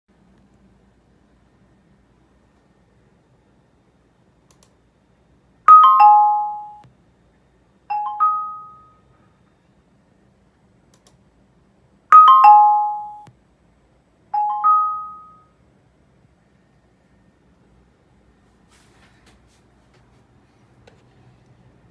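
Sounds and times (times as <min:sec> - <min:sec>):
electronic notification chime: 0:05.7 - 0:06.8, 0:07.9 - 0:09.0, 0:12.2 - 0:13.3, 0:14.4 - 0:15.5.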